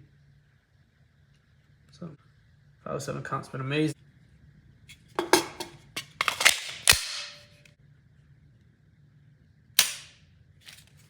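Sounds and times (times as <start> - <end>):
metal clicks of pistol handling: 6.0 - 7.4.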